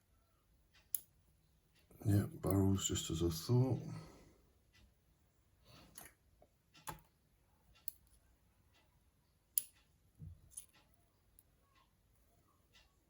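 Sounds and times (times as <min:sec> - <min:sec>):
small metal clicks and taps: 0:00.8 - 0:01.1, 0:05.9 - 0:08.2, 0:09.5 - 0:11.5.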